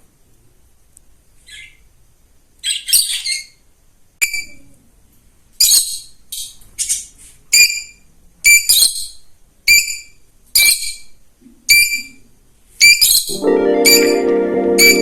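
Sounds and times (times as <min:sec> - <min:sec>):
small bird chirping: 0:01.4 - 0:01.9, 0:02.6 - 0:04.7, 0:05.6 - 0:13.3.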